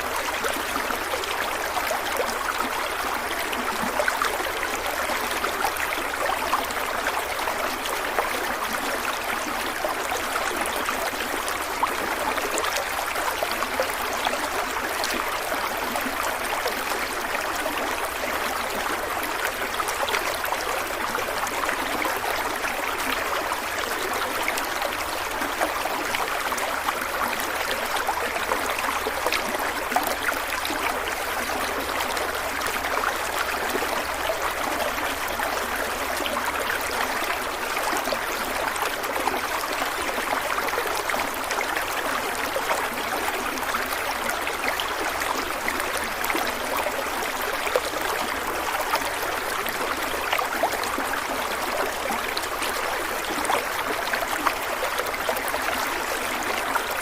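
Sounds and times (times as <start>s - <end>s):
stream babbling over rocks: 0.0s - 57.0s.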